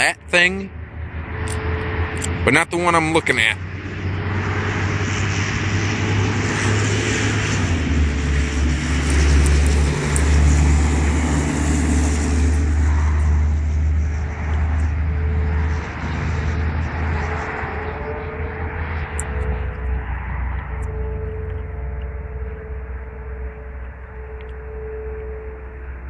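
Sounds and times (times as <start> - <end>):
distant warning siren: 0.0 - 26.0
road traffic rumble: 0.0 - 26.0.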